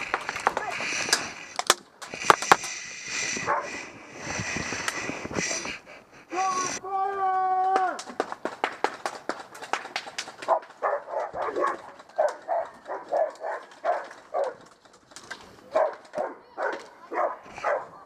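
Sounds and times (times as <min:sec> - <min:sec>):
airsoft guns firing clicks: 0:00.0 - 0:02.8, 0:07.9 - 0:17.0
dog barking: 0:03.4 - 0:03.8, 0:10.5 - 0:14.6, 0:15.7 - 0:18.0.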